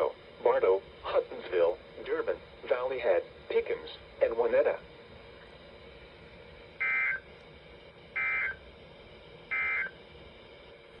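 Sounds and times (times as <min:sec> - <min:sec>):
warbling data tone bursts: 0:06.8 - 0:07.3, 0:08.1 - 0:08.6, 0:09.5 - 0:10.0.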